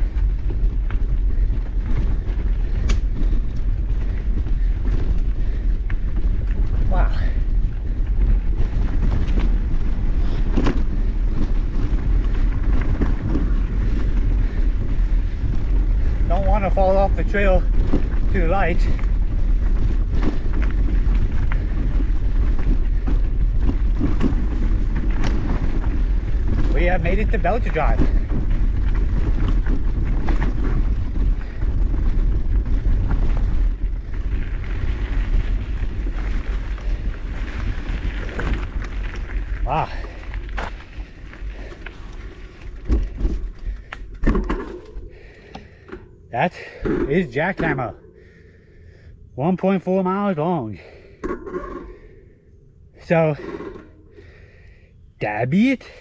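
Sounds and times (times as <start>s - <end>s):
mountain bike rumble on rocks: 0.0s - 45.9s
wind buffeting microphone: 0.0s - 46.2s
bike knocks and rattles: 8.1s - 47.8s.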